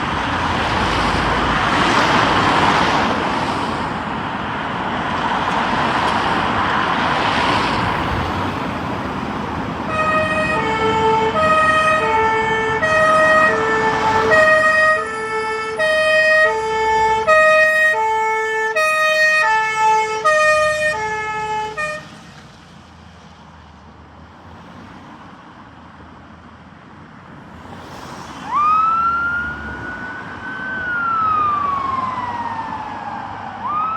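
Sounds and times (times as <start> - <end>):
fire engine rumble: 0.0 - 23.0, 28.5 - 33.9
siren rising wail: 9.8 - 22.1, 28.5 - 33.9
two-tone horns high-low: 9.9 - 22.2.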